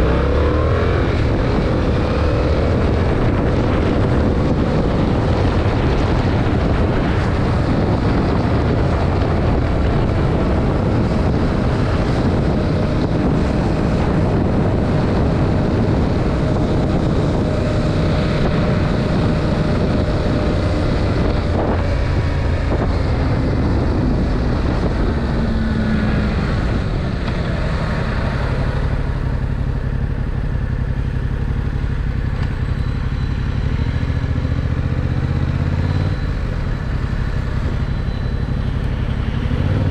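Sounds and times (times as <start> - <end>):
motorcycle engine running: 0.0 - 39.9
wind rushing over microphone: 0.0 - 39.9.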